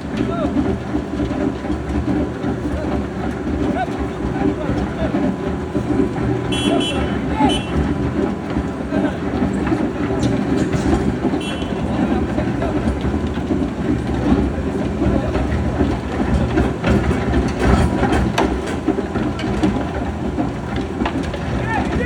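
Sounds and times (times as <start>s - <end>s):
heavy machinery engine rumble: 0.0s - 22.0s
metallic clanks and rattles: 0.0s - 22.0s.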